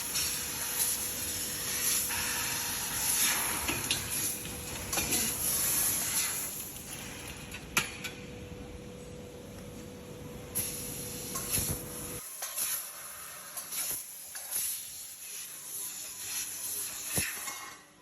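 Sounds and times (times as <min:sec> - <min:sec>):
laser cutting machine hissing: 0:00.0 - 0:06.7, 0:10.6 - 0:17.4
faint steady hum: 0:07.5 - 0:12.2.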